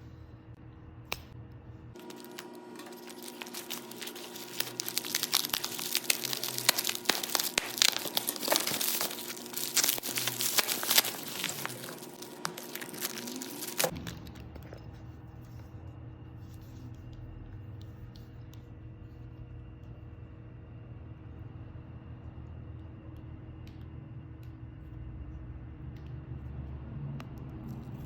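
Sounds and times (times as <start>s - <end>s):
packaging crinkling and tearing: 2.0s - 14.6s.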